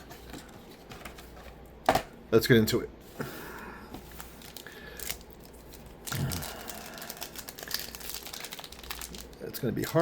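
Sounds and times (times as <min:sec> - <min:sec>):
foil wrappers crinkling: 0:04.2 - 0:10.0.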